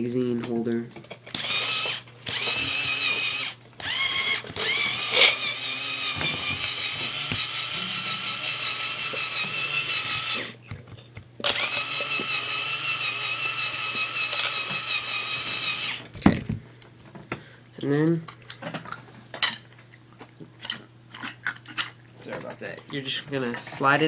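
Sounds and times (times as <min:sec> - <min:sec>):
small electric motor whining: 0:01.3 - 0:10.6, 0:11.4 - 0:16.0.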